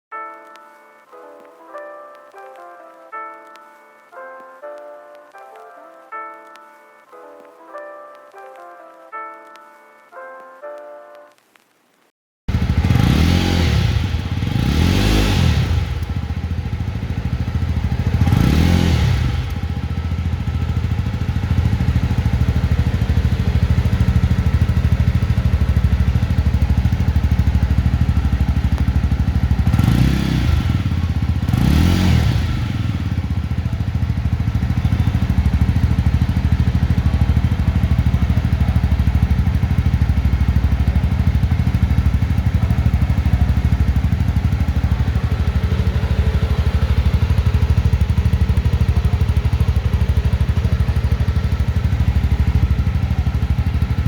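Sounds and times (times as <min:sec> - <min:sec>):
motorcycle engine idling and revving: 0:12.5 - 0:54.0.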